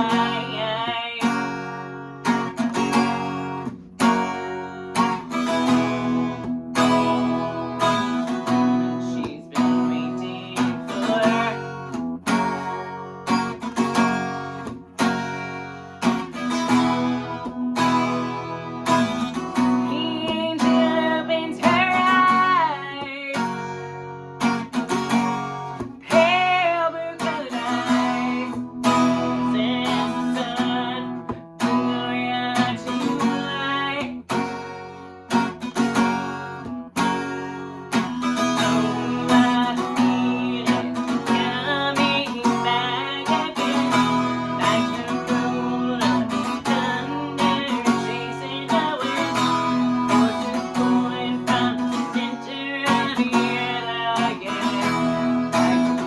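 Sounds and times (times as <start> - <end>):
person singing: 0.0 - 1.9, 4.1 - 13.0, 16.5 - 23.9, 25.9 - 34.5, 38.1 - 56.0
acoustic guitar strumming: 0.0 - 56.0.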